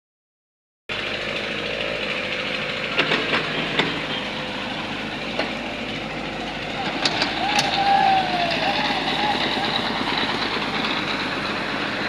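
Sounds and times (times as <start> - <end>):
excavator mechanical noise: 0.9 - 12.0
sharp knocks and clanks: 2.9 - 4.4, 5.2 - 5.8.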